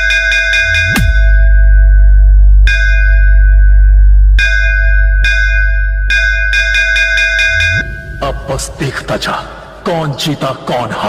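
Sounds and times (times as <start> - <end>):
bell-like synth tone: 0.0 - 9.1
deep sub-bass: 0.7 - 6.7.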